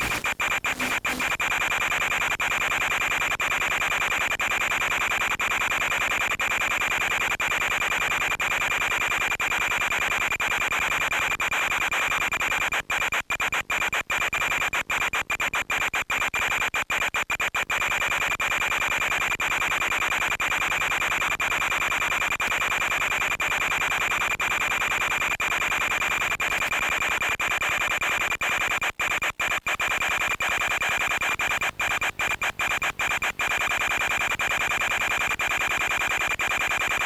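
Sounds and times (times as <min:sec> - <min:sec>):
constant high whine: 0:00.0 - 0:02.0, 0:29.2 - 0:37.0
radio hiss: 0:00.0 - 0:02.0, 0:25.7 - 0:37.0.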